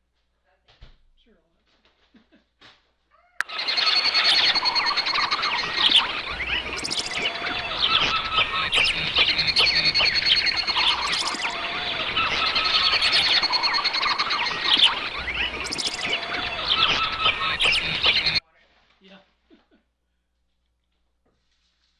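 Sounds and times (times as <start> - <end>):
birds chirping: 3.4 - 18.4.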